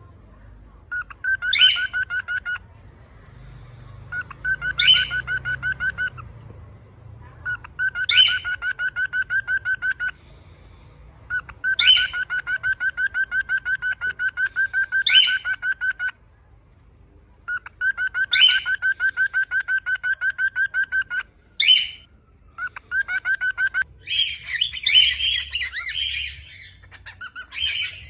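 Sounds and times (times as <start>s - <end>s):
cockatiel chirps: 0.9s - 2.6s, 4.1s - 6.3s, 7.4s - 10.2s, 11.3s - 16.2s, 17.4s - 28.0s
cockatiel whistling: 0.9s - 2.6s, 4.1s - 6.2s, 7.4s - 10.2s, 11.3s - 16.1s, 17.5s - 28.0s.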